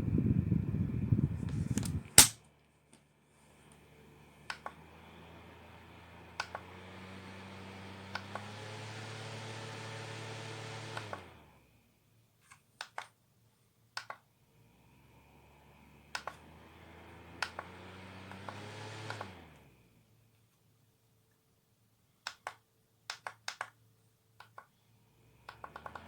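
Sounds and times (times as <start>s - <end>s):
fan air rushing: 0.0s - 2.4s
fan button clicks: 1.8s - 2.4s.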